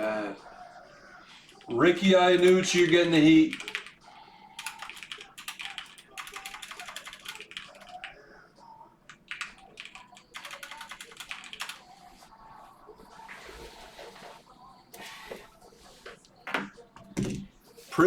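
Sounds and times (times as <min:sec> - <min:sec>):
computer keyboard typing: 0:01.4 - 0:08.3, 0:09.0 - 0:12.2.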